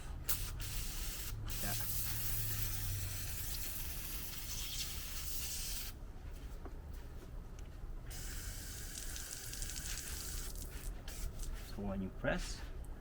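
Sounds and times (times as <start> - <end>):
pressure washer spray hissing: 0.3 - 5.9, 8.1 - 11.4.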